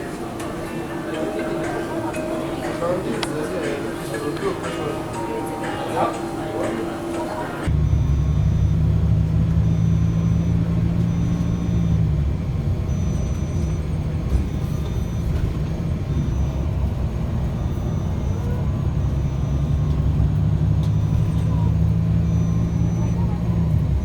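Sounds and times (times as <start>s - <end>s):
vehicle engine and tyres rumble: 7.7s - 24.0s.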